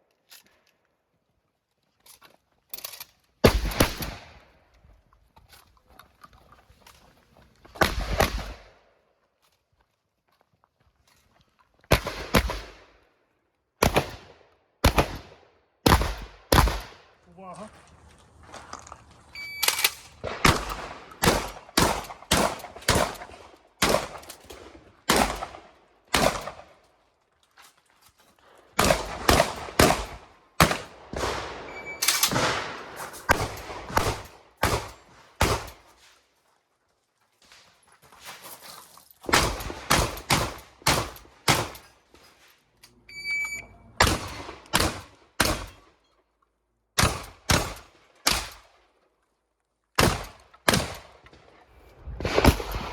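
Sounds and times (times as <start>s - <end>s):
shotgun firing: 3.4s - 4.3s, 11.9s - 12.8s, 13.8s - 17.0s, 19.8s - 26.6s, 28.8s - 35.8s, 39.3s - 41.9s, 44.0s - 45.8s, 47.0s - 48.7s, 50.0s - 51.2s, 52.1s - 52.9s.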